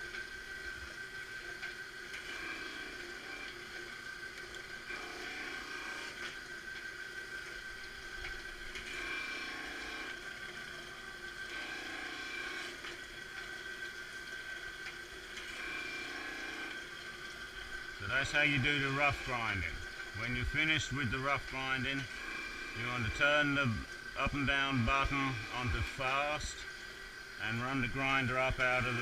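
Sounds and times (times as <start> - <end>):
knife grinder whining: 0.0 - 29.0
grinding wheel on blade: 4.7 - 6.3, 8.8 - 13.4, 15.4 - 17.0, 18.0 - 29.0.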